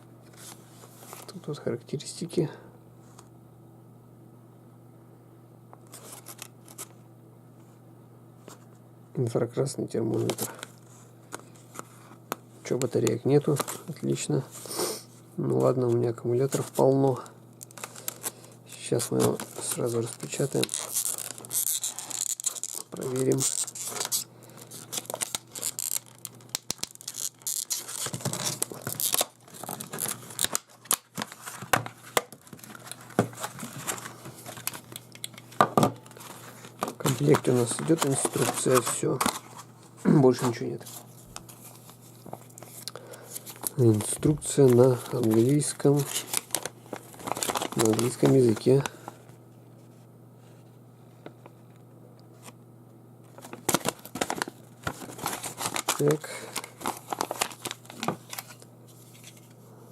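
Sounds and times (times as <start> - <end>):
low steady hum: 0.0 - 59.9
packaging tearing and crinkling: 17.6 - 39.7, 40.3 - 49.0, 53.3 - 59.4.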